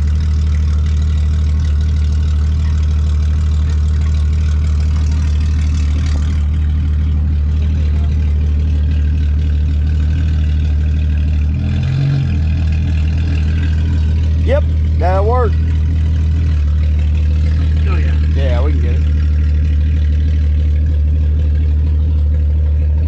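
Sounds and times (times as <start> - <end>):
vehicle engine idling: 0.0 - 23.0.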